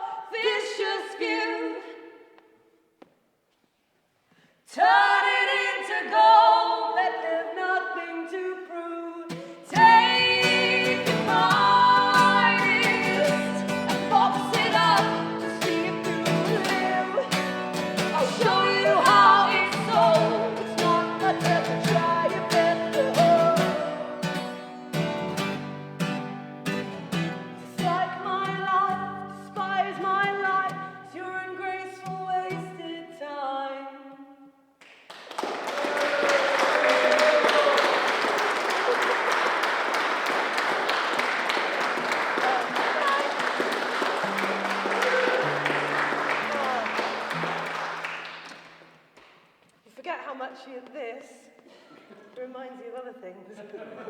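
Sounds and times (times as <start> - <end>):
voices singing in harmony: 0.0 - 2.2, 4.7 - 24.4
guitar strumming: 9.3 - 31.0.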